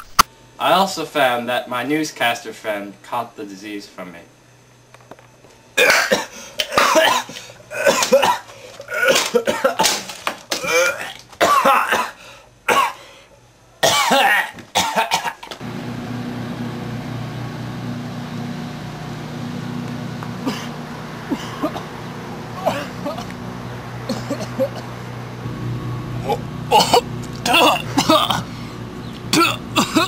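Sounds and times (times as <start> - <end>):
steady low hum: 0.0 - 30.0
person coughing hard: 5.8 - 13.1, 13.8 - 15.5, 20.4 - 21.9, 22.6 - 23.3, 24.1 - 24.8, 26.2 - 28.6, 29.3 - 30.0.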